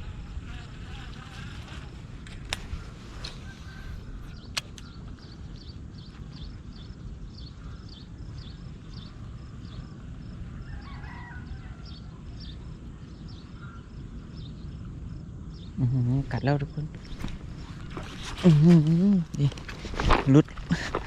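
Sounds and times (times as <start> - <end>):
sharp click: 4.5 - 5.0.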